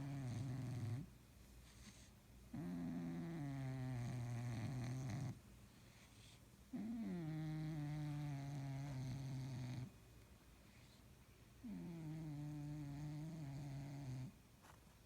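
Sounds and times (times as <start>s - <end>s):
cat snoring: 0.0s - 1.1s, 1.8s - 5.4s, 6.0s - 9.9s, 11.6s - 14.4s.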